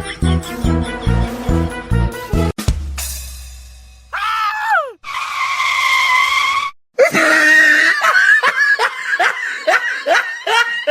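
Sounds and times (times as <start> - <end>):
high-pitched cries: 4.2 - 5.0.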